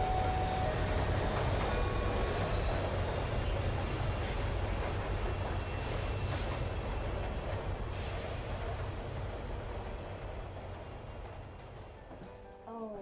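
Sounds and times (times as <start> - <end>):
high squeal of train wheels: 0.0 - 9.6
train wheels rumbling on track: 0.0 - 12.4.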